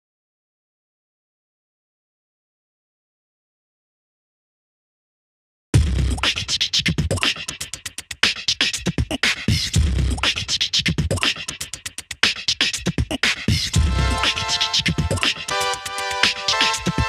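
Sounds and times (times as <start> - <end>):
heavy bass beat: 5.8 - 17.0
rapid dense percussive hits: 5.8 - 17.0.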